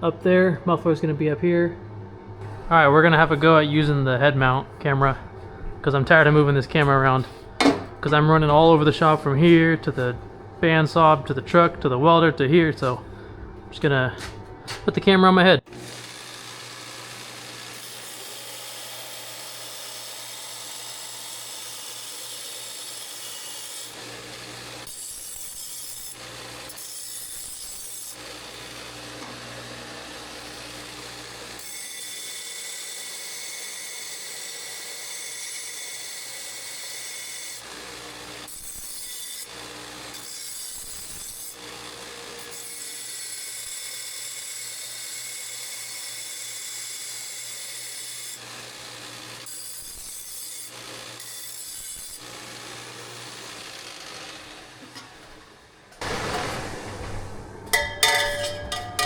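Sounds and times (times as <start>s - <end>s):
bandsaw cutting metal tubing: 15.6s - 56.6s, 57.7s - 59.0s.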